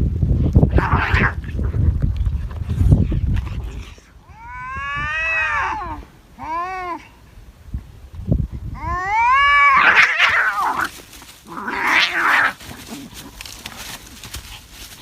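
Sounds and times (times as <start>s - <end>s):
cat yowling: 4.3s - 7.0s, 8.8s - 10.8s.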